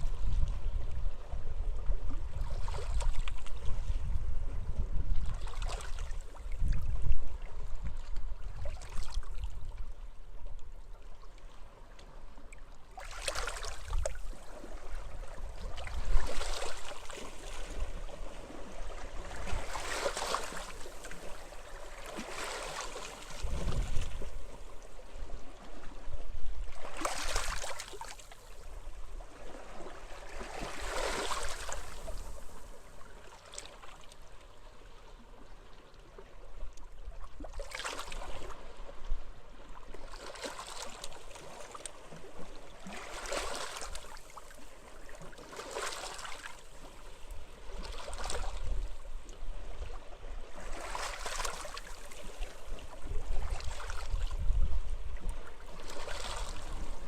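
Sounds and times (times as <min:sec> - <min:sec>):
wind rumbling on microphone: 0:00.0 - 0:10.7, 0:23.2 - 0:27.7, 0:52.0 - 0:57.0
small waves washing ashore: 0:11.6 - 0:36.4, 0:37.3 - 0:57.0.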